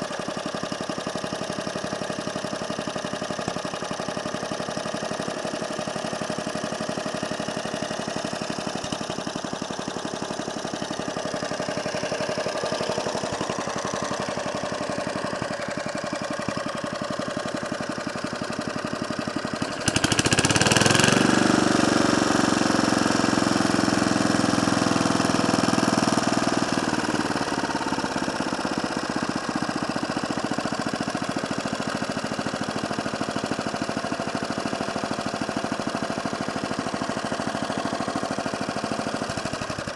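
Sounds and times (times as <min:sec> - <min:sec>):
mower engine running: 0:00.0 - 0:39.9.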